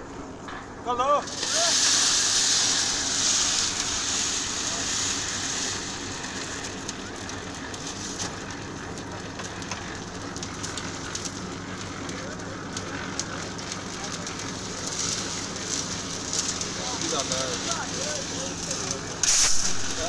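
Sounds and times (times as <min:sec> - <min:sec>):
crackling gravelly concrete noise: 0:00.0 - 0:20.0
machine engine running: 0:00.0 - 0:20.0.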